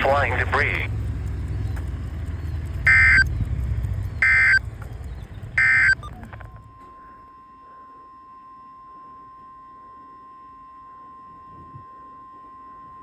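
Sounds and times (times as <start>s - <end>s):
warbling digital data tones: 0.0s - 7.9s
low background rumble: 0.0s - 13.0s
faint steady high tone: 5.6s - 13.0s.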